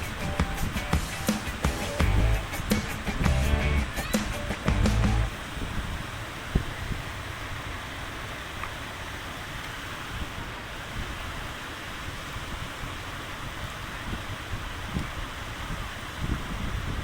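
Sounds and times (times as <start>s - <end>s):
even hiss: 0.0s - 16.5s
wind buffeting microphone: 13.4s - 17.0s.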